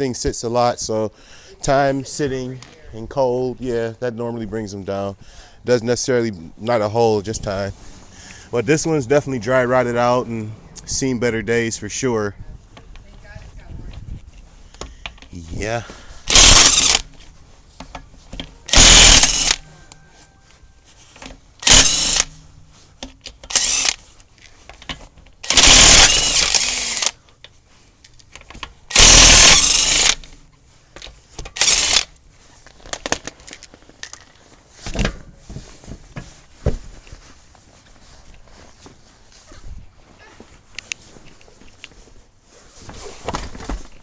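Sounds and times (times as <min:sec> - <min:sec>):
impact wrench bursts: 0:16.3 - 0:17.1, 0:18.7 - 0:19.6, 0:21.6 - 0:22.4, 0:23.4 - 0:24.0, 0:25.4 - 0:27.2, 0:28.9 - 0:30.3, 0:31.5 - 0:32.2.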